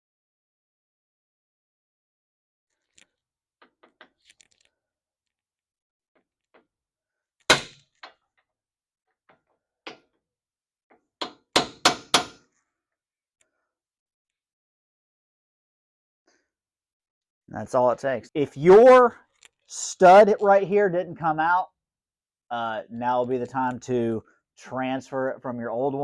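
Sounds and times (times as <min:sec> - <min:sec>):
hammer striking metal seal: 0:11.2 - 0:12.4.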